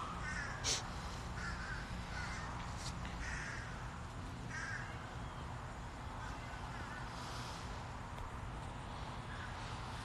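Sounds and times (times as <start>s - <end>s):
peafowl calling: 0.0s - 5.5s.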